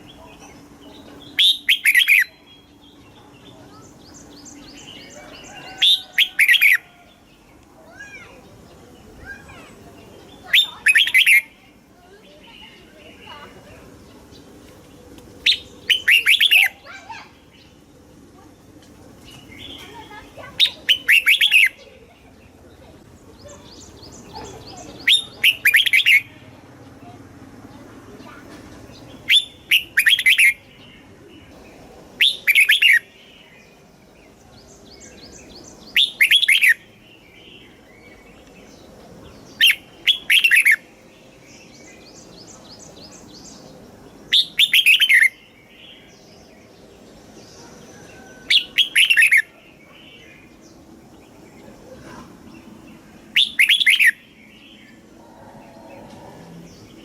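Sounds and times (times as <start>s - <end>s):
bird singing whistled phrases: 1.3s - 2.5s, 10.4s - 11.5s, 15.5s - 17.0s, 20.6s - 21.8s, 25.0s - 26.3s, 29.3s - 30.6s, 32.2s - 33.1s, 35.9s - 36.8s, 39.6s - 40.8s, 44.3s - 45.4s, 48.3s - 49.5s, 53.3s - 54.6s.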